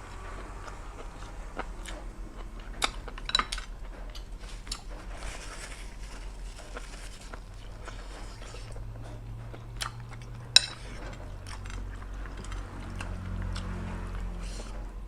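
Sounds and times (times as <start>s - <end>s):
person chewing noodles: 0.0s - 15.0s.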